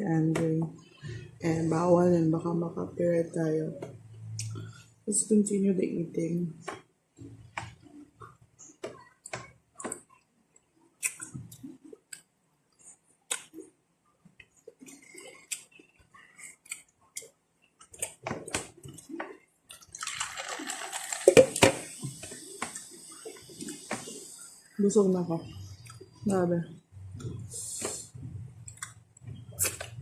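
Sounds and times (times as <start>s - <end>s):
eating mouth noises: 11.0s - 11.7s, 27.1s - 30.0s.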